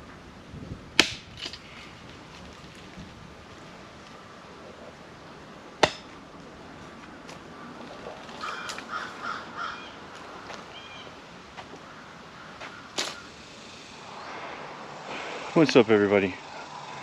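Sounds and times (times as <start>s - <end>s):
bird harsh calls: 8.4s - 11.2s, 11.8s - 14.2s.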